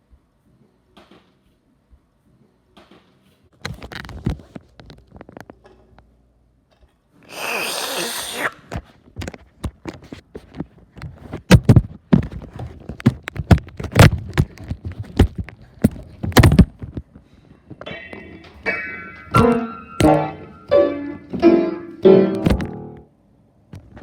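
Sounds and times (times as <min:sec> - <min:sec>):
short hissing burst: 0:07.3 - 0:08.6
irregular taps and thumps: 0:08.8 - 0:18.6
piano music: 0:17.9 - 0:23.1.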